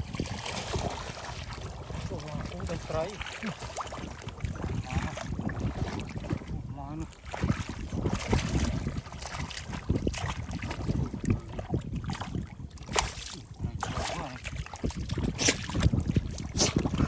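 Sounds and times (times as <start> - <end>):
shallow water splashing: 0.0 - 17.0.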